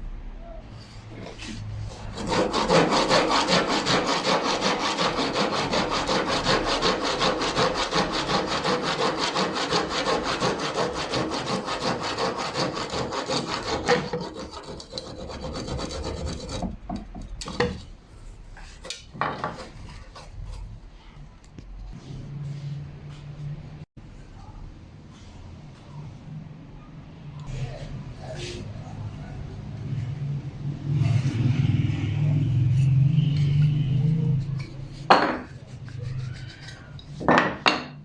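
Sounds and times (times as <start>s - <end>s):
hand sawing wood: 1.2s - 16.8s, 18.6s - 20.6s, 32.3s - 37.3s.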